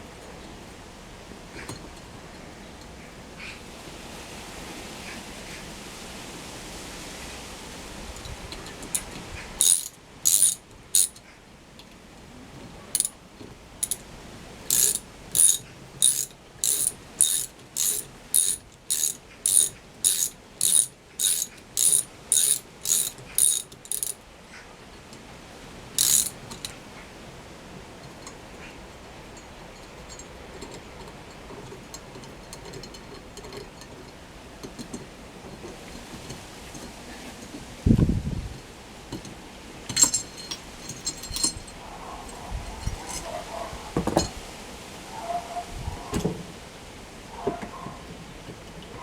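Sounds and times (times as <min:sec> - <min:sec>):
ratchet wrench clicking: 0:09.0 - 0:11.2, 0:13.8 - 0:14.0, 0:14.7 - 0:24.2, 0:26.0 - 0:26.4.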